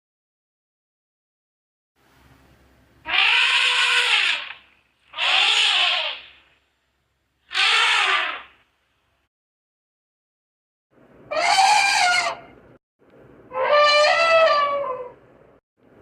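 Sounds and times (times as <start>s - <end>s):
animal calling rising and falling: 3.1s - 6.4s, 7.5s - 8.6s, 11.3s - 12.5s, 13.5s - 15.2s.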